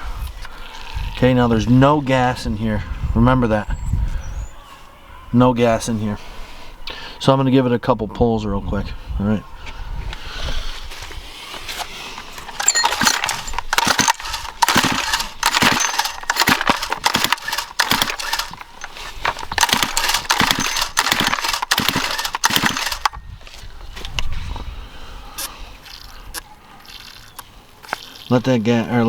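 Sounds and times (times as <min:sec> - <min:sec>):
recoil starter pull whirring: 0:12.2 - 0:23.2.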